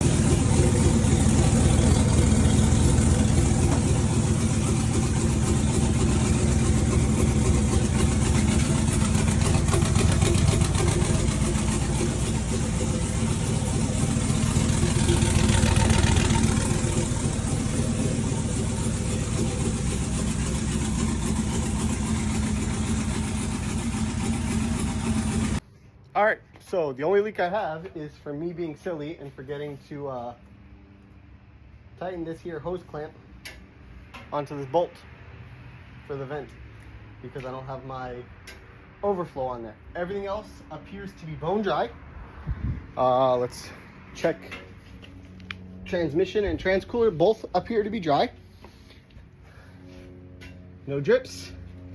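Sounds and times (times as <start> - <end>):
race engine idling: 0.0 - 25.6.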